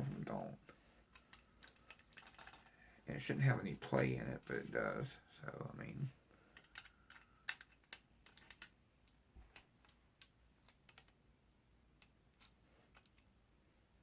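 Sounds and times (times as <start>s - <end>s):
metal clip and cartridges clicking: 6.6s - 8.8s.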